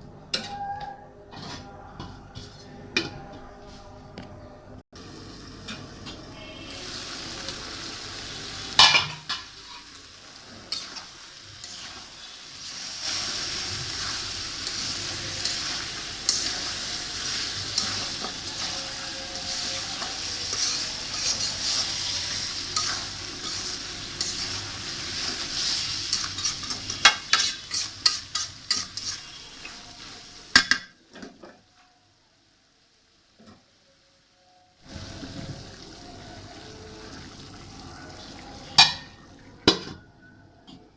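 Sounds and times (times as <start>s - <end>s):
spoon scraping a pan: 0.3s - 3.4s, 8.7s - 30.8s, 38.6s - 39.9s
meat sizzling in a pan: 5.0s - 30.8s, 34.8s - 39.2s.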